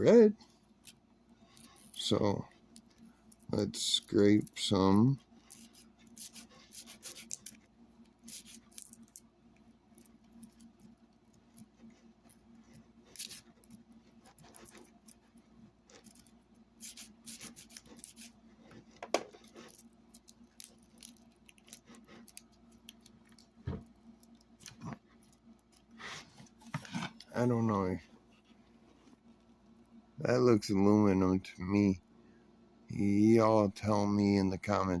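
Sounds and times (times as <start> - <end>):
steady low hum: 0.0 - 35.0
tool scraping wire coating: 5.4 - 7.6, 8.2 - 9.0, 13.1 - 13.7, 16.8 - 18.4.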